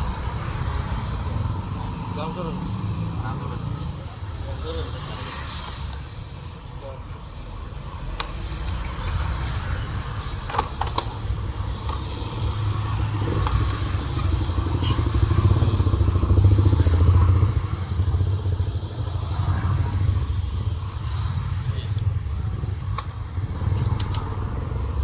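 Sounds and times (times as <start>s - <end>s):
motorcycle engine running: 11.0s - 19.1s
sharp clicks: 22.9s - 24.4s.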